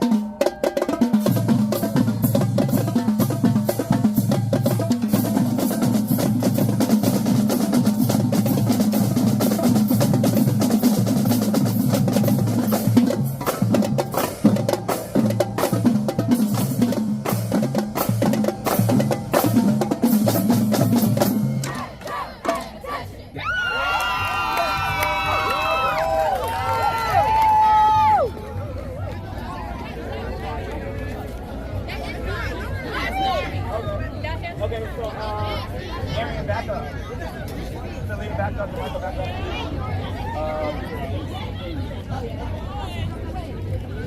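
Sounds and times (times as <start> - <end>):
marching drumline cadence: 0.0 - 23.4.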